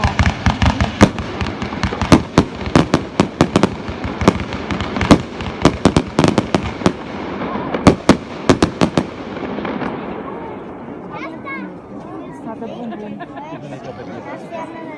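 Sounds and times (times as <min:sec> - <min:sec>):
fireworks hiss and crackle: 0:00.0 - 0:10.8
fireworks bangs: 0:00.0 - 0:11.4.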